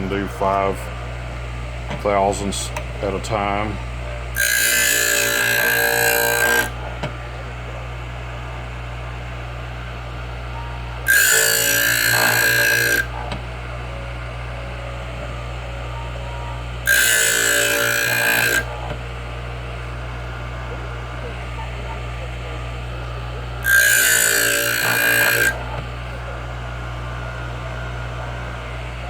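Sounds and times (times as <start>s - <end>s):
electric grinder running: 0.0s - 29.0s
metal ring grinding: 4.3s - 7.0s, 11.0s - 13.4s, 16.8s - 19.0s, 23.6s - 26.3s.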